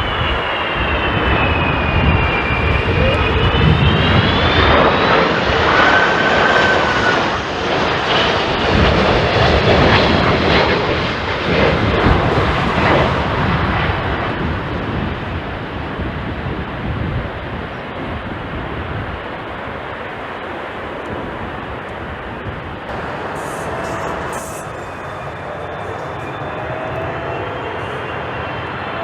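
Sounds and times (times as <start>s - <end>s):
jet engines passing close: 0.0s - 29.0s
thin engine whine: 11.5s - 15.3s, 22.9s - 29.0s.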